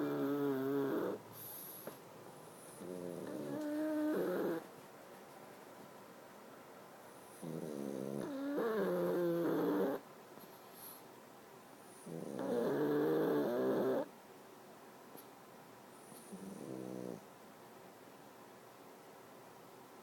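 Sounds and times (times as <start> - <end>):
dog snoring: 0.0 - 4.7, 7.1 - 10.0, 11.9 - 14.1, 16.0 - 17.3.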